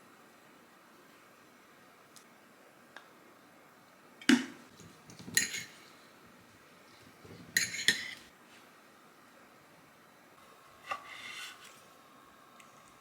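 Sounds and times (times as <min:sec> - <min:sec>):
dishes and utensils clinking: 0:04.2 - 0:06.2, 0:06.9 - 0:08.3.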